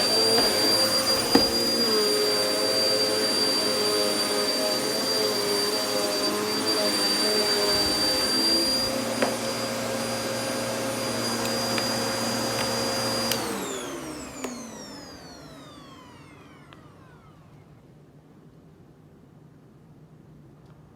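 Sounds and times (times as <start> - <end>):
vacuum cleaner whining: 0.0 - 18.1
vacuum cleaner switch click: 11.3 - 14.9.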